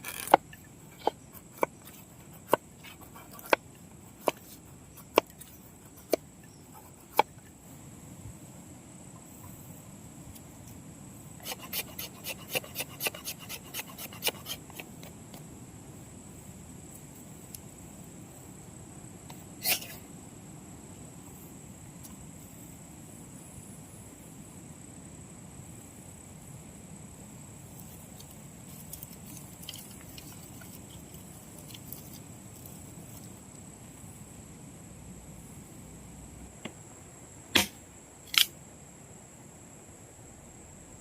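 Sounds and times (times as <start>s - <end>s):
loud sharp knocks: 37.5s - 37.8s.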